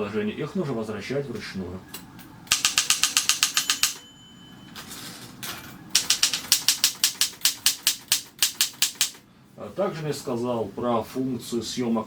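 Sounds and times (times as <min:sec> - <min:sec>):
typewriter keystrokes: 0:02.5 - 0:04.0, 0:05.9 - 0:09.2.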